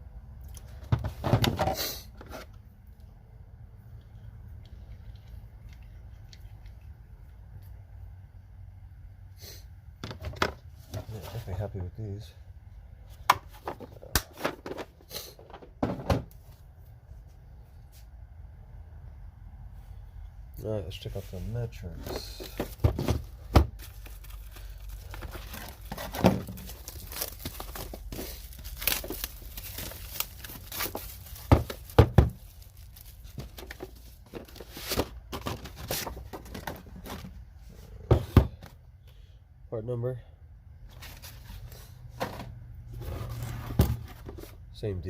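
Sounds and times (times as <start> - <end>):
clicks and knocks of plastic case: 0.8 - 1.8, 10.0 - 11.1, 13.2 - 16.4, 22.0 - 23.8, 30.9 - 32.4, 33.3 - 37.4.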